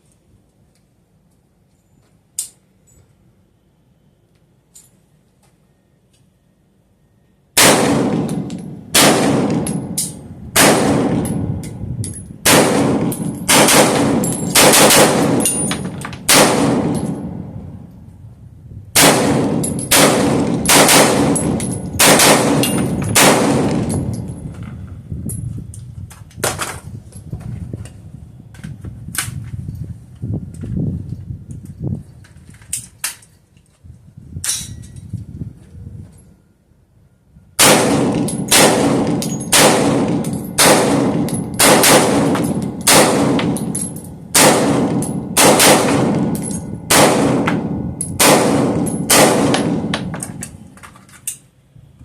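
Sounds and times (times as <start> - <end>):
rifle shots echoing: 7.6 - 11.5, 12.4 - 17.6, 19.0 - 24.3, 37.6 - 50.4.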